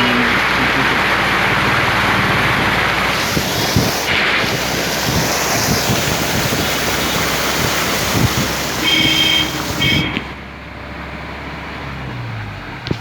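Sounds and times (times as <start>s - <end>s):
floodwater rushing: 0.0s - 10.5s
wind buffeting microphone: 0.3s - 10.4s.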